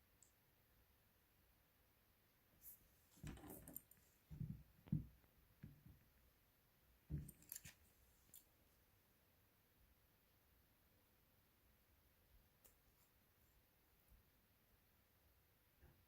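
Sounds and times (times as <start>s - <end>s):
faint handling knocks and clicks: 3.2s - 6.1s.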